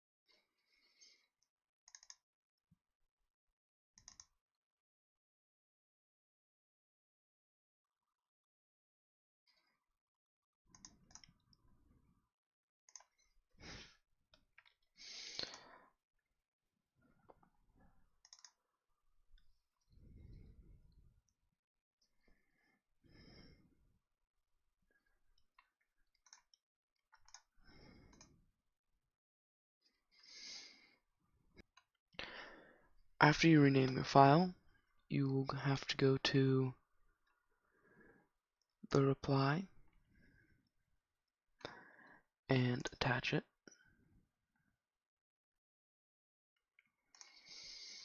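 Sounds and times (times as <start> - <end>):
soft breaths: 0.3 - 1.4, 15.0 - 16.0, 19.4 - 21.2, 22.1 - 24.0, 27.5 - 28.5, 29.8 - 31.1, 32.2 - 33.0, 41.6 - 42.3, 47.1 - 48.0
computer mouse and keyboard clicking: 1.9 - 2.2, 4.0 - 4.4, 18.2 - 18.6, 25.6 - 28.3
faint clicks: 46.8 - 47.6.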